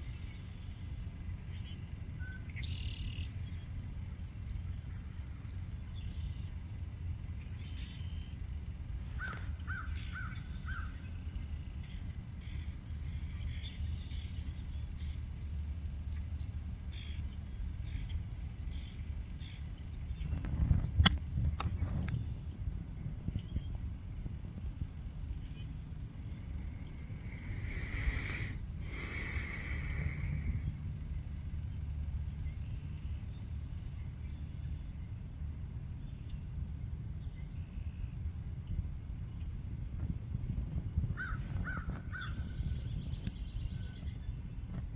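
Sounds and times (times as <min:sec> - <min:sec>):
low outdoor rumble: 0:00.0 - 0:44.9
animal calling: 0:27.2 - 0:30.4.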